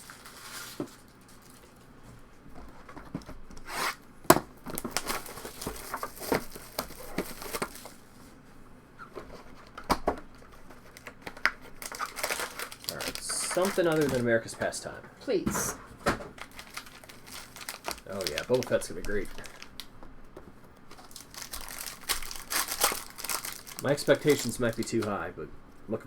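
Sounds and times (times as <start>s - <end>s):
foil wrapper tearing and crinkling: 0.0s - 1.9s, 4.7s - 8.0s, 10.6s - 14.5s, 16.4s - 19.9s, 20.9s - 25.2s
cards being handled: 9.0s - 14.8s, 16.3s - 25.2s.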